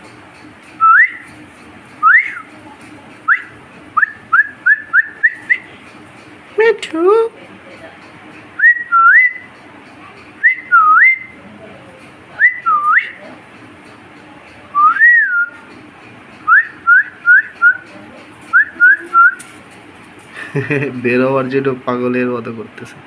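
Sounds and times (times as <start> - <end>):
person whistling: 0.8 - 1.2, 2.0 - 2.4, 3.3 - 5.7, 8.6 - 9.5, 10.4 - 11.3, 12.4 - 13.2, 14.8 - 15.6, 16.5 - 17.8, 18.5 - 19.4.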